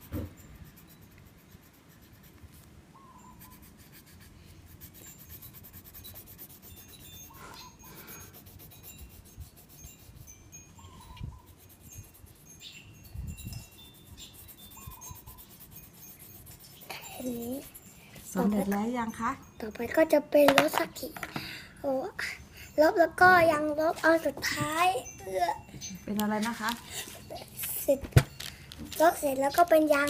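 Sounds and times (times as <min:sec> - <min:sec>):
crayon rubbing on paper: 0:00.0 - 0:02.7, 0:03.4 - 0:07.3, 0:07.9 - 0:10.3, 0:11.4 - 0:12.5, 0:13.6 - 0:18.5
high chime-like tones: 0:06.7 - 0:20.1, 0:22.3 - 0:29.9.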